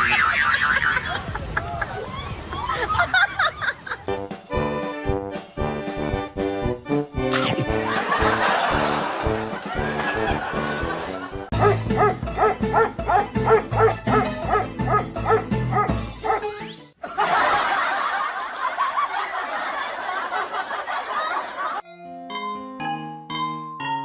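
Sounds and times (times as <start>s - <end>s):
background music: 4.1s - 17.0s, 21.8s - 24.0s
dog barking: 11.6s - 16.4s
keyboard notes: 21.8s - 24.0s.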